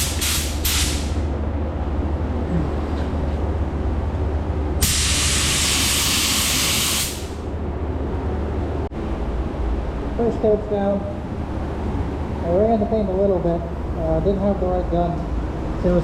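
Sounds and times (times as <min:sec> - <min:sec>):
paint spray gun hissing: 0:00.0 - 0:01.2, 0:04.8 - 0:07.4
steady low hum: 0:00.0 - 0:16.0.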